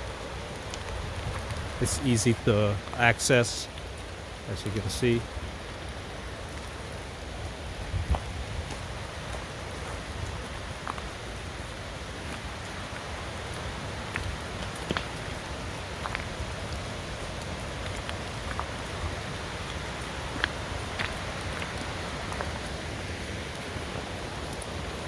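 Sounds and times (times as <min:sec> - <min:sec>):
raindrops ticking: 0:00.0 - 0:25.0
drizzle hissing: 0:01.8 - 0:03.7.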